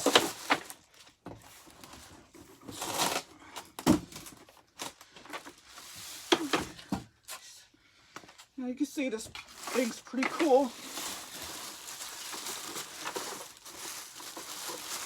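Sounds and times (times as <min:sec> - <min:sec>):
packaging rustle: 0:00.0 - 0:03.3, 0:09.3 - 0:15.0.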